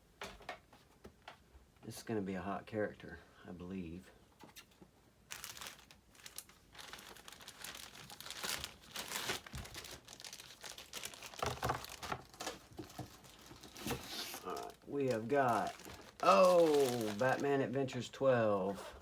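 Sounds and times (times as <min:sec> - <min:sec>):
packing material crinkling: 0:05.3 - 0:18.0.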